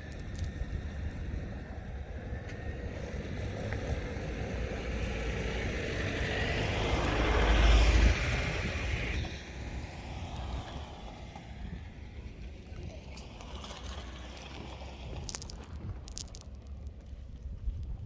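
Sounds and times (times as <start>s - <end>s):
motor vehicle passing: 2.7s - 16.8s.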